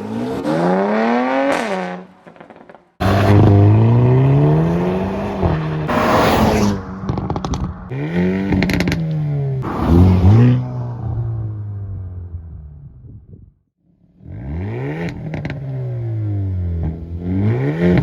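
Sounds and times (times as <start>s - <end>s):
car engine revving: 0.0s - 13.4s, 14.1s - 18.0s
exhaust crackles and pops: 6.8s - 9.2s.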